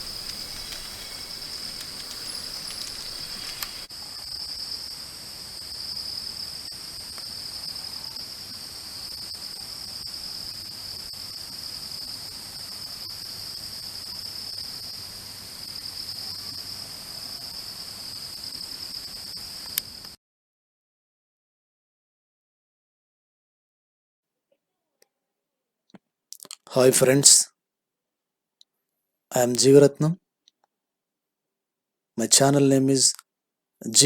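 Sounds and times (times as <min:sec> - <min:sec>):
stream water flowing: 0:00.0 - 0:03.9
insects chorus: 0:00.0 - 0:20.0.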